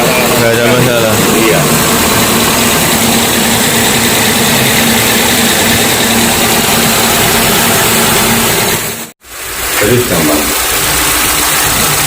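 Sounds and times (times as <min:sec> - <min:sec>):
car engine idling: 0:00.0 - 0:09.1
ac compressor hum: 0:00.0 - 0:12.0.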